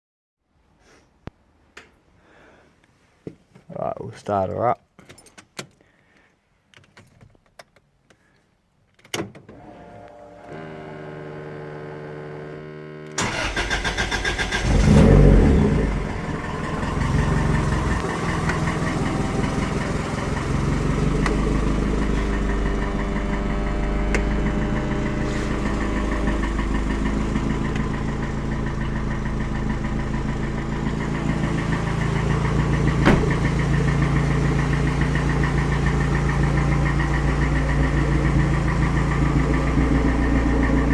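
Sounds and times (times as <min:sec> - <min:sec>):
car engine idling: 0:09.9 - 0:40.9
starter cranking: 0:13.2 - 0:39.8
ignition clicks and hum: 0:15.8 - 0:19.8, 0:20.6 - 0:34.2.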